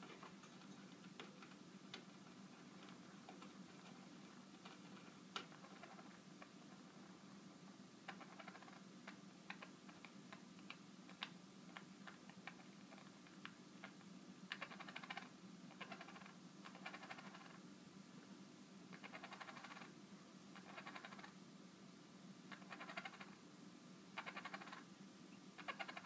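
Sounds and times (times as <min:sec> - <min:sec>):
budgerigar clicking rattle: 0:08.1 - 0:08.8, 0:14.5 - 0:17.5, 0:20.6 - 0:21.3, 0:24.2 - 0:24.8, 0:25.6 - 0:26.0.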